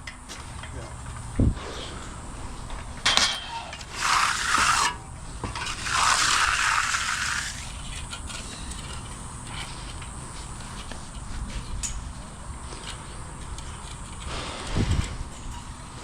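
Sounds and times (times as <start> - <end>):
hand tool scraping concrete: 1.6 - 11.0.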